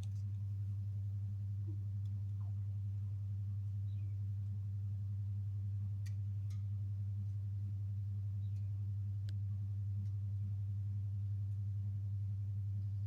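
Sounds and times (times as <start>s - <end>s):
steady low hum: 0.0s - 13.0s
faint ticks: 1.7s - 2.6s, 5.9s - 7.4s, 8.4s - 9.4s, 10.0s - 10.2s.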